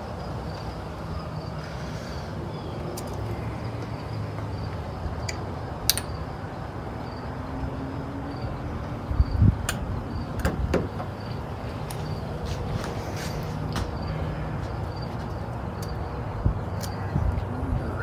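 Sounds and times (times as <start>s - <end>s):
sharp metallic tool clicks: 5.2s - 6.2s.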